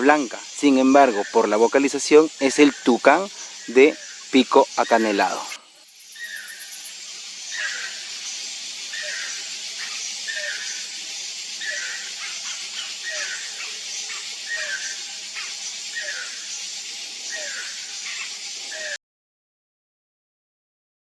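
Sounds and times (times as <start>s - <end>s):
steady high hiss: 0.0s - 19.0s
toucan croaking calls: 0.0s - 19.0s.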